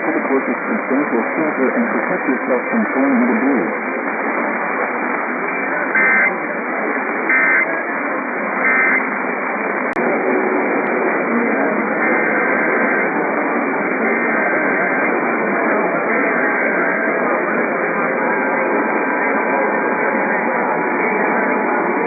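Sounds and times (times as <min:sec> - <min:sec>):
radio static hiss: 0:00.0 - 0:15.8
faint steady tones: 0:00.0 - 0:22.0.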